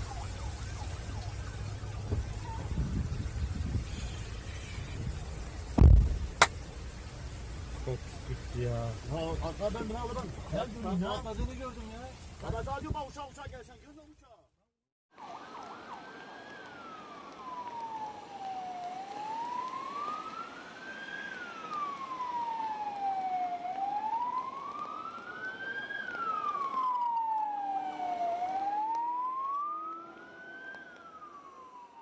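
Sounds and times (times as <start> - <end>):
emergency vehicle siren wailing: 0.0 - 5.5, 15.1 - 32.0.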